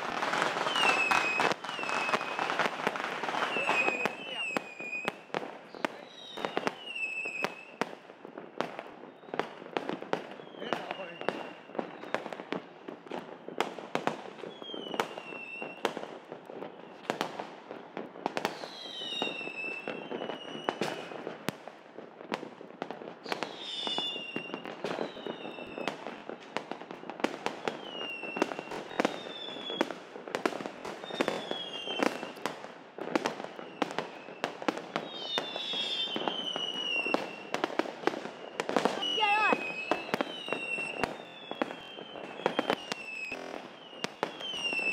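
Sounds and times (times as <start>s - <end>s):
falling firework whistles: 0.0s - 7.8s, 14.4s - 16.0s, 18.4s - 21.3s, 23.2s - 26.4s, 27.0s - 30.0s, 30.7s - 32.5s, 33.3s - 44.9s
firework bangs and crackles: 0.0s - 44.9s.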